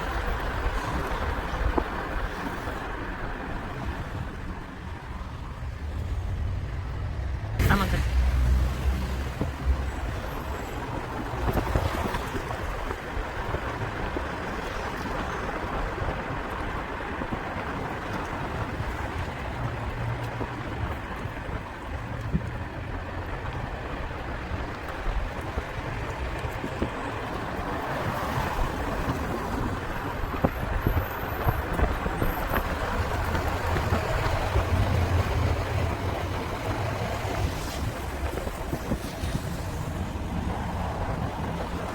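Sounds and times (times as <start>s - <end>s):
vehicle engine rumble passing: 0.0s - 41.9s
hiss of passing traffic: 0.2s - 12.8s, 25.4s - 41.9s.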